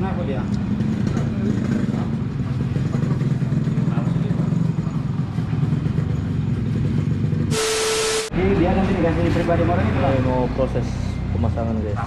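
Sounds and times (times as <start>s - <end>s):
motorcycle engine idling: 0.1s - 7.5s
burst of hiss with steady tone: 7.5s - 8.3s.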